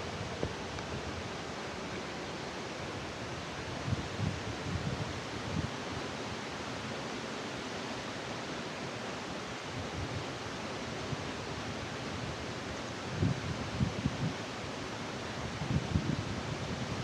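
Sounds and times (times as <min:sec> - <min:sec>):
large waterfall roaring: 0:00.0 - 0:17.0.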